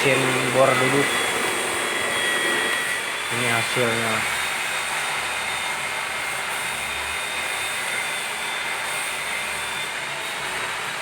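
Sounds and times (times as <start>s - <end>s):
drill press motor hum and whine: 0.0s - 11.0s.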